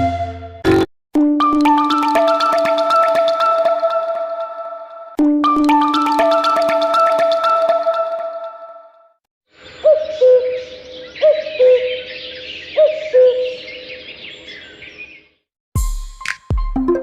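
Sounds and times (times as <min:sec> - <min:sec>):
birdsong ringtone chirping: 0:01.4 - 0:09.0, 0:09.6 - 0:15.3.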